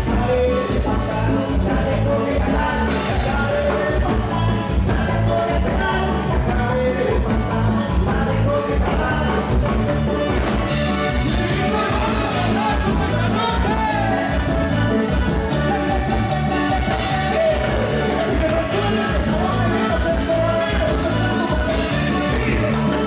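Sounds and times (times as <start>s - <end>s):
latin dance music: 0.0s - 23.0s
percussion: 0.0s - 23.0s
person singing: 0.0s - 23.0s.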